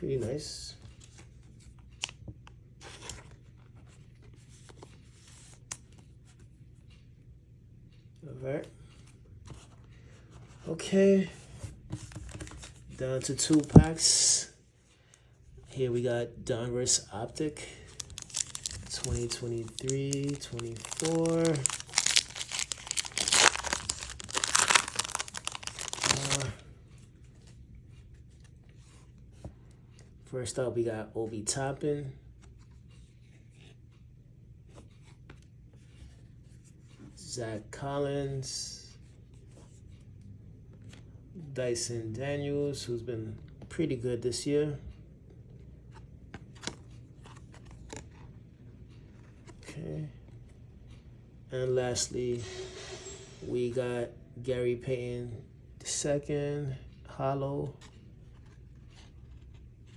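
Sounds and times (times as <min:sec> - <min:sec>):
wrapper tearing and crinkling: 0:18.0 - 0:26.6.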